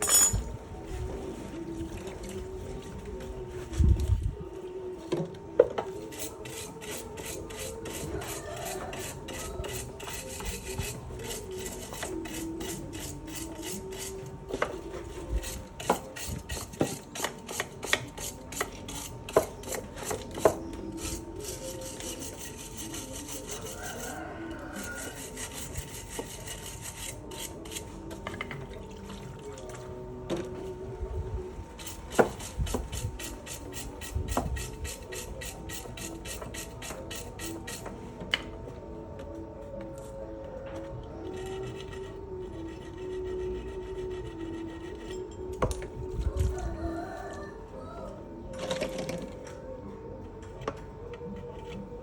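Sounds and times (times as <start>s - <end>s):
scraping strokes: 5.9s - 28.4s, 31.6s - 38.1s, 40.8s - 45.5s.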